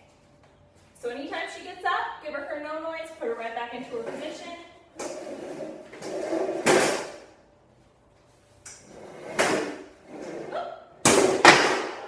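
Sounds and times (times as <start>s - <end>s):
chair scraping across floor: 3.9s - 7.0s, 8.3s - 10.6s.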